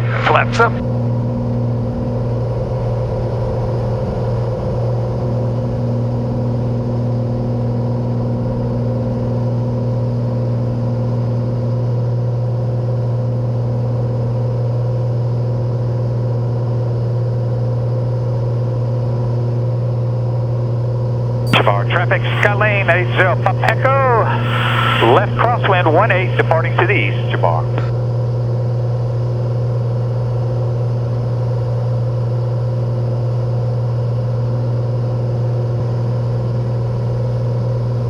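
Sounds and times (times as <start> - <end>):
airplane engine and propeller hum: 21.6 - 27.9.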